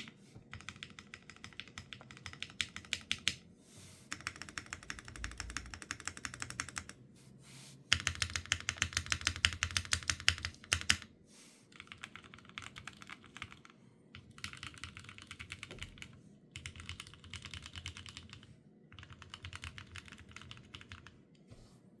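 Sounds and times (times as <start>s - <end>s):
typing on mechanical keyboard: 0.0s - 3.4s, 4.1s - 7.0s, 7.9s - 11.1s, 11.7s - 21.2s.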